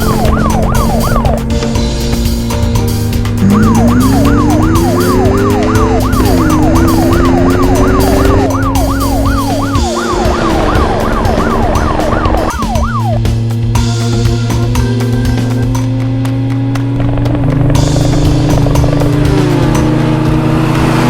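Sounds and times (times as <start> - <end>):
siren wailing: 0.0 - 1.5, 3.4 - 15.8
background music: 0.0 - 21.0
low whine gliding upward: 3.4 - 13.4.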